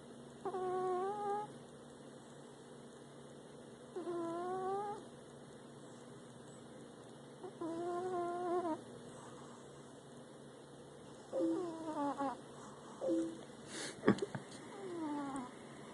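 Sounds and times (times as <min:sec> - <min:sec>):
cat snoring: 0:00.4 - 0:01.5, 0:03.9 - 0:05.0, 0:07.4 - 0:09.7, 0:11.4 - 0:13.0, 0:14.7 - 0:15.6.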